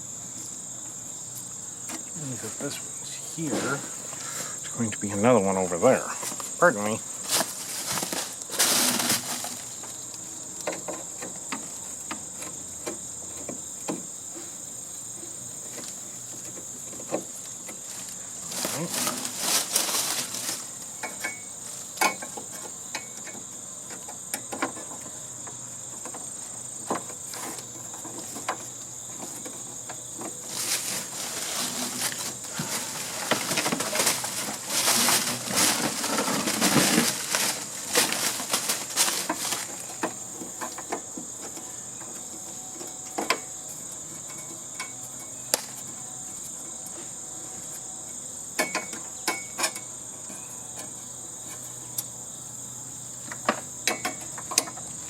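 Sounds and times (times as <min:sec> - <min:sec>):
metal rattling and scraping: 0:07.2 - 0:09.9, 0:27.0 - 0:45.4.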